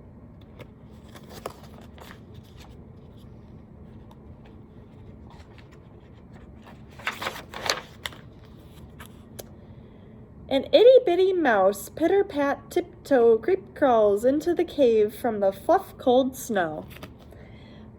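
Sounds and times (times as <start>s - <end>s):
faint room hum: 0.0s - 17.9s
paper rustling: 0.4s - 9.2s, 16.8s - 17.3s.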